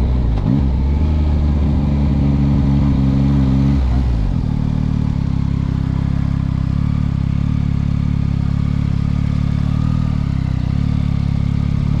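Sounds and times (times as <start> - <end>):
motorcycle engine idling: 4.1 - 12.0.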